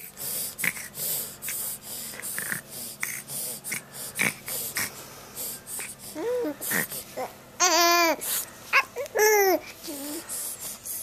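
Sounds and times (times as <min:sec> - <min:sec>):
baby breathy puffs: 0:00.0 - 0:07.2, 0:09.5 - 0:11.0.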